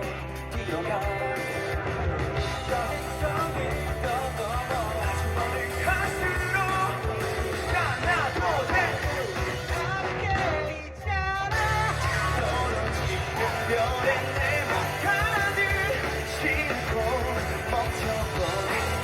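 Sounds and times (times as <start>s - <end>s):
live pop-rock band: 0.0s - 19.0s
man singing: 0.0s - 19.0s.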